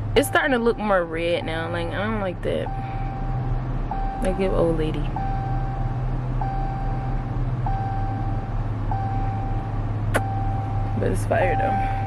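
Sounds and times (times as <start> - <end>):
steady low hum: 0.0 - 12.0
sharp click: 10.1 - 10.3.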